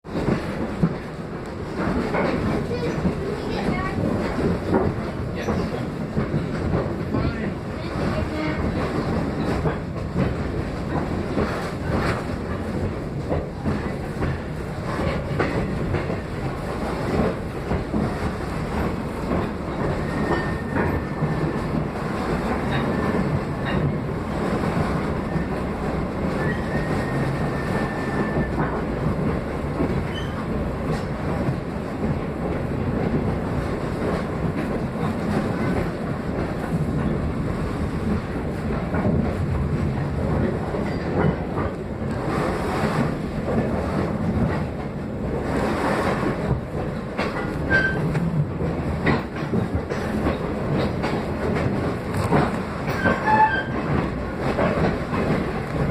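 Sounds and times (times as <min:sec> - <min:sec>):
train rumbling: 0:00.0 - 0:55.9
wheels clacking over rail joints: 0:00.1 - 0:55.9
wheel squeals: 0:26.4 - 0:28.6, 0:30.1 - 0:30.5, 0:47.7 - 0:48.1, 0:52.9 - 0:53.8.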